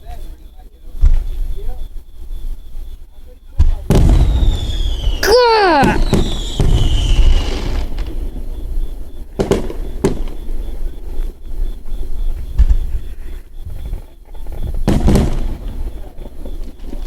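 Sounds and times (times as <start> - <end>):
fireworks bangs and booms: 3.5 - 17.0
falling firework whistle: 3.9 - 10.5.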